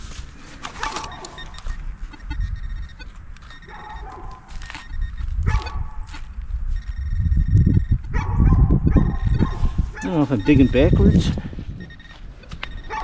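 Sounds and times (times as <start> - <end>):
shovel digging thuds and scraping: 0.0 - 1.6
dog barking: 3.7 - 4.5, 5.4 - 6.0, 8.1 - 10.1.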